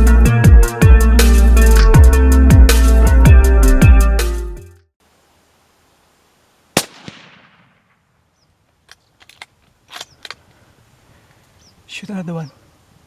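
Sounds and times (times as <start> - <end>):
rifle shot echoing: 6.8 - 8.2.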